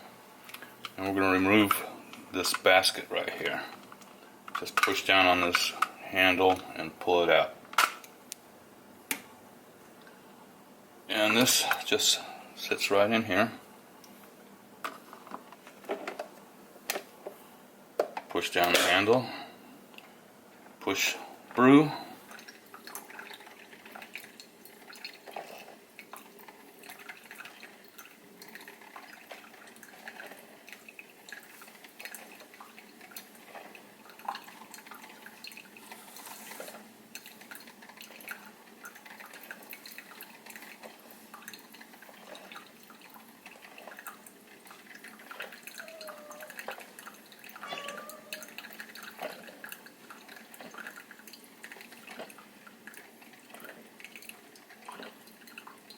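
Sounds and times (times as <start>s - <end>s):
coffee maker dripping: 20.8s - 35.8s, 37.2s - 55.9s.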